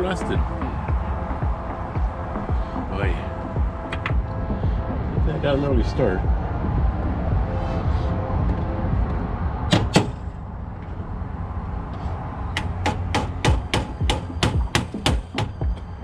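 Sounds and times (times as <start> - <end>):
hammer striking metal: 9.7 - 10.3, 12.6 - 15.9.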